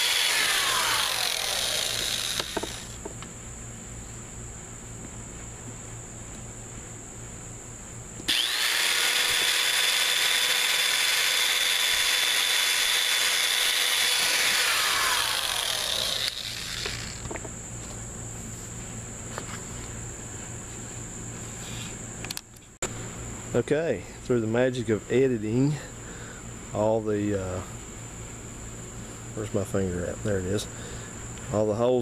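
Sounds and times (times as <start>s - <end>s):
electric drill boring plastic: 0.0s - 3.0s, 8.3s - 17.4s.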